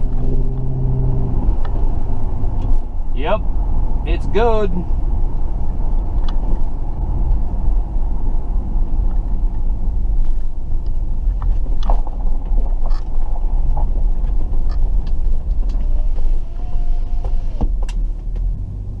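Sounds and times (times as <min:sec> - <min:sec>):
engine and road rumble: 0:00.0 - 0:19.0
faint clicks and rattles: 0:09.0 - 0:16.4.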